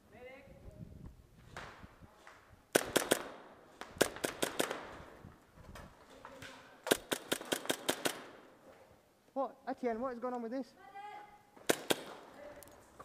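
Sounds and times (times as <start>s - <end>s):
airsoft guns firing: 2.7s - 5.2s, 6.8s - 8.6s, 11.6s - 12.4s.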